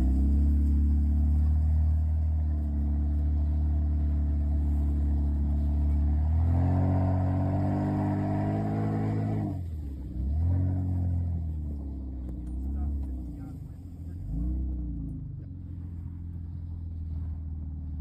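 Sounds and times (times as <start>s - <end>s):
vehicle engine droning: 0.0s - 18.0s.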